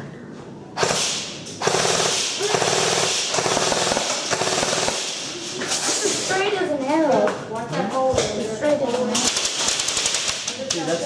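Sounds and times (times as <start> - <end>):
airsoft rifle firing full auto: 0.8 - 5.3, 9.2 - 10.5.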